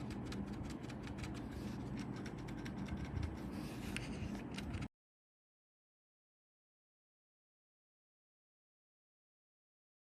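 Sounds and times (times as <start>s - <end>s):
steady low hum: 0.0s - 4.9s.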